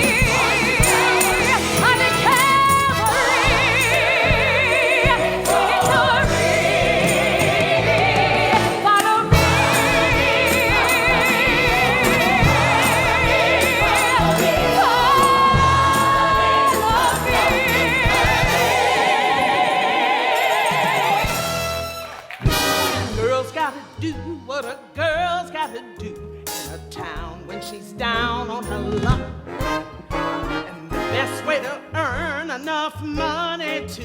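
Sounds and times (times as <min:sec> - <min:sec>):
pit orchestra: 0:00.0 - 0:34.0.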